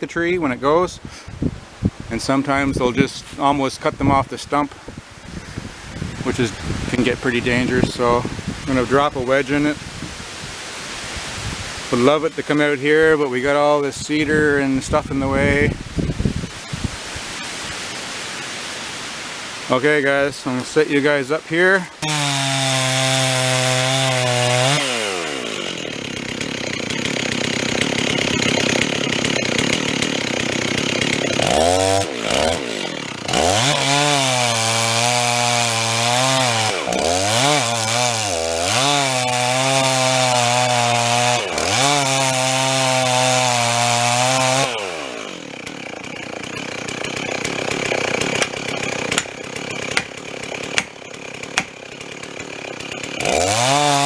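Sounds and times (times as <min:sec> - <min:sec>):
chainsaw cutting wood: 0:21.6 - 0:54.0
sharp knocks: 0:49.9 - 0:50.2.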